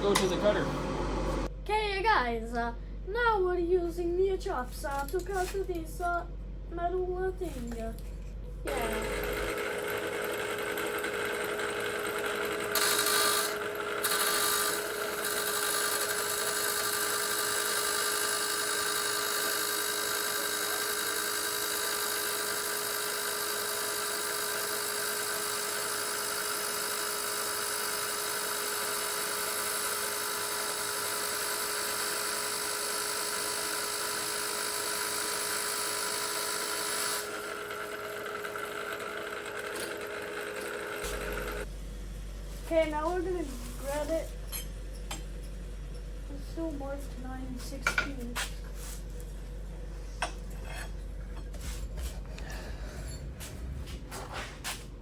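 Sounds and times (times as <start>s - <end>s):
chop saw motor running: 0.0s - 1.5s, 8.7s - 41.7s
blade grinding metal: 8.7s - 41.7s.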